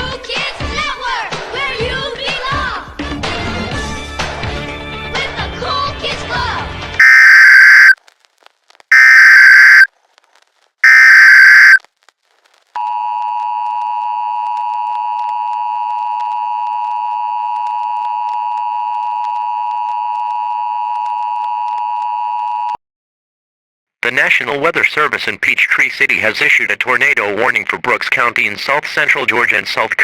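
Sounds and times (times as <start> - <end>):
music: 0.0 - 7.0
harsh digital data screech: 7.0 - 8.0, 8.9 - 9.9, 10.8 - 11.8
two-tone attention signal: 7.0 - 8.0, 8.9 - 9.9, 10.8 - 11.8.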